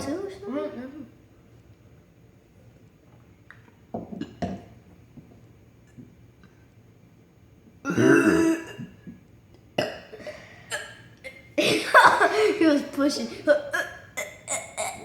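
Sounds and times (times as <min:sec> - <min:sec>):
person belching loudly: 0:07.8 - 0:08.8.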